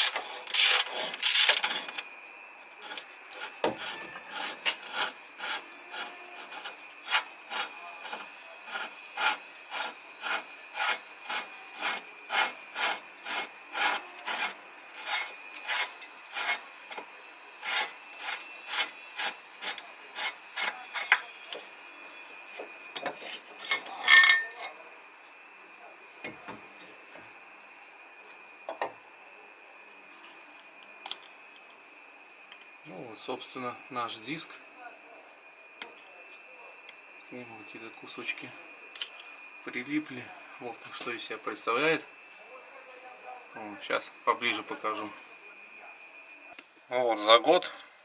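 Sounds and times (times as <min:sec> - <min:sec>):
ratchet wrench rasping: 0:00.0 - 0:02.0, 0:02.8 - 0:21.2.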